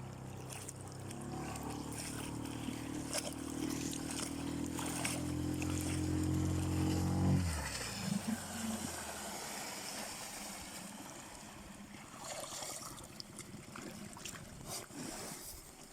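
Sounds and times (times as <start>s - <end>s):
motor humming: 0.0s - 11.2s
faint running water: 0.0s - 14.7s.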